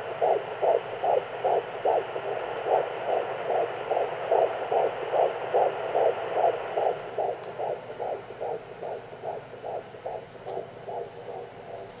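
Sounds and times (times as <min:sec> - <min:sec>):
fetal heartbeat whooshing pulses: 0:00.0 - 0:12.0.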